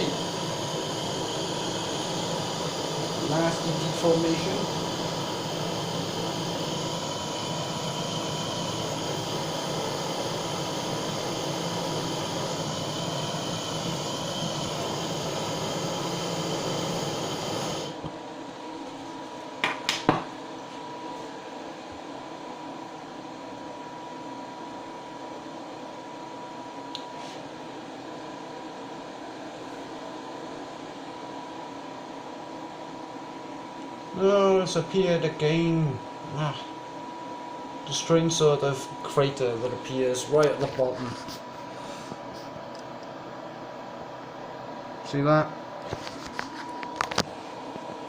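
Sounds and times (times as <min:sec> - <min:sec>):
blowtorch hissing: 0:00.0 - 0:18.1, 0:37.8 - 0:42.4.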